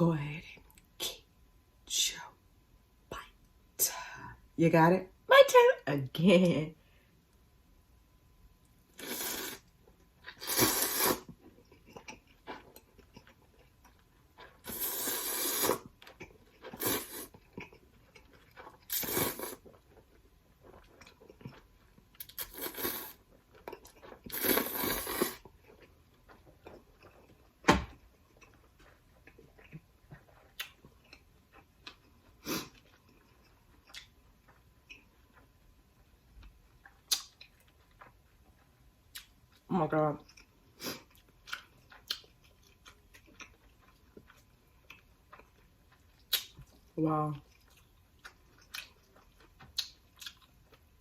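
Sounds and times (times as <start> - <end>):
biting and chewing: 40.3 - 50.9.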